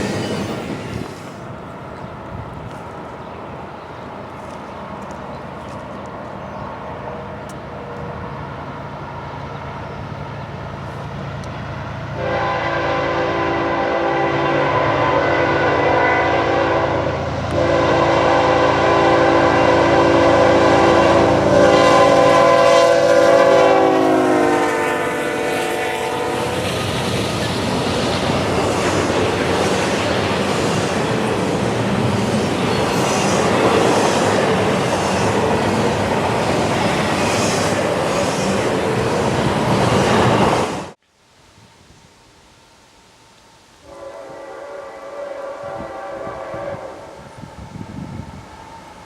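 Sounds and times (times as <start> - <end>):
locomotive engine rumbling: 0.0 - 41.0
train air horn blasts: 12.2 - 26.8, 43.8 - 48.8.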